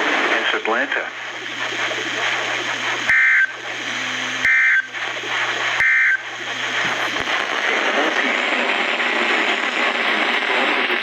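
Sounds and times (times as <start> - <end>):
receiver hiss: 0.0 - 11.0
low hum: 1.1 - 10.6
digital data tone bursts: 1.3 - 7.4.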